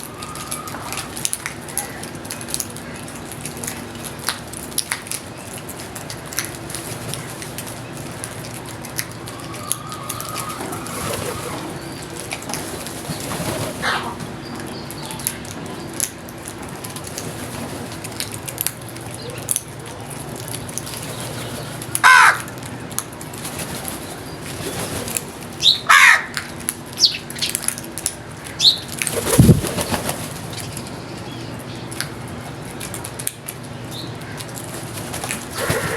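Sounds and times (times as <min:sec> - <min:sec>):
crow cawing: 0:22.0 - 0:22.5, 0:25.9 - 0:26.4.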